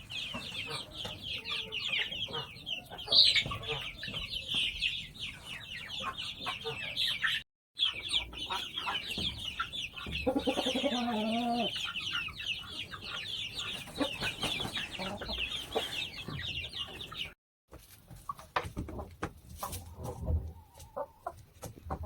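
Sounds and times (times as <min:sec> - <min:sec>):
chickens clucking: 0:00.0 - 0:22.0
chicks peeping: 0:00.0 - 0:22.0.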